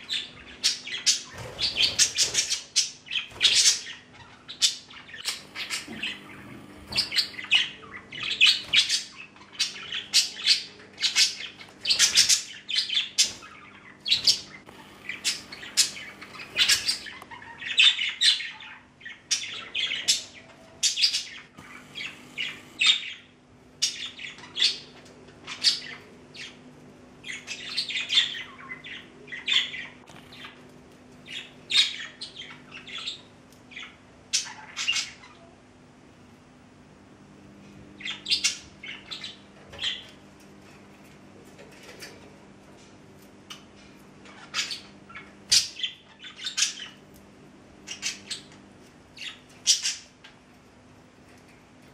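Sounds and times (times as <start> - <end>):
budgerigars chirping and warbling: 0.0 - 26.6, 27.2 - 35.6, 38.0 - 42.2, 43.4 - 47.0, 47.9 - 50.4.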